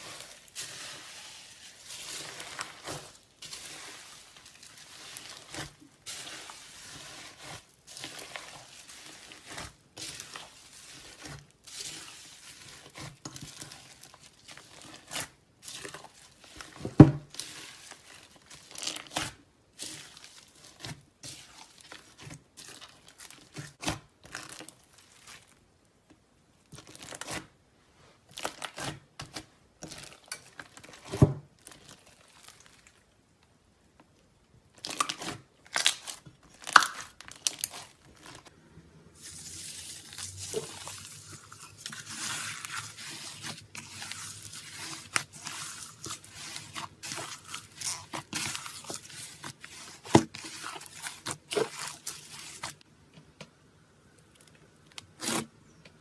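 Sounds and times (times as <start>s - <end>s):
slime crackling and popping: 34.8s - 38.5s, 39.2s - 52.8s.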